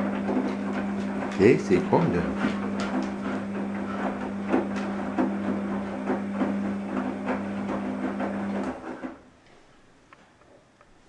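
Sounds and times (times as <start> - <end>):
washing machine running: 0.0 - 9.2.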